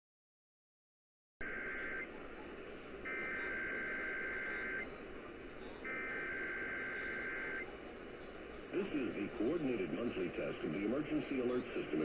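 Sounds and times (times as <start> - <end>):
two-tone data bursts: 1.4 - 2.2, 3.0 - 5.2, 5.8 - 7.7
radio static: 1.4 - 7.8, 8.7 - 12.0.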